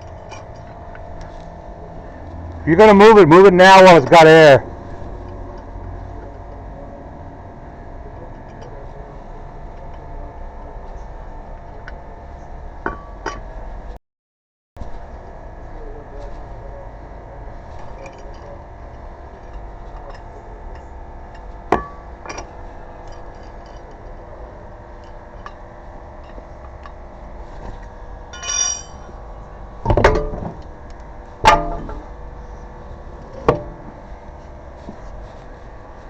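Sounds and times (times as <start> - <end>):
metal tools clinking: 28.3 - 29.1
short ringing metallic tone: 28.4 - 29.0.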